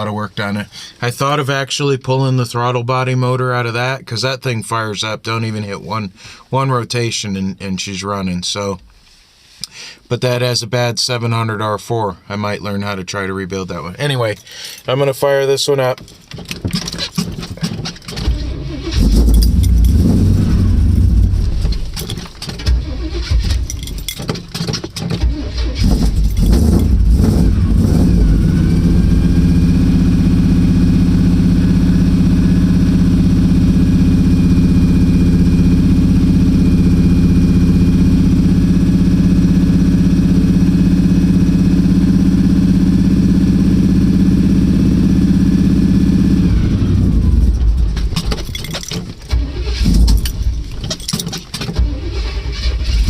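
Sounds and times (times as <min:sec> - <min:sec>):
car engine starting and idling: 0:14.4 - 0:53.0.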